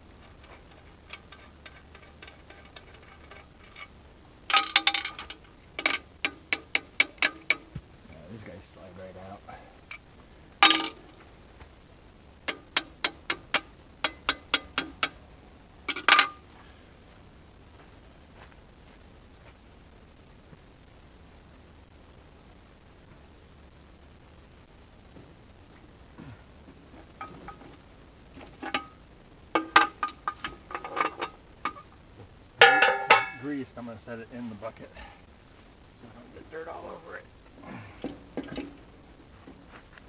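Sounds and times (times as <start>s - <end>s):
metal clicks and clinks: 0.2s - 3.9s, 4.5s - 8.2s, 9.9s - 11.3s, 12.5s - 15.2s, 15.9s - 16.4s, 28.4s - 29.0s, 29.6s - 31.9s, 32.6s - 33.5s
sharp metallic clicks: 4.5s - 8.3s
loud metal clank: 29.6s - 31.8s, 32.6s - 33.6s.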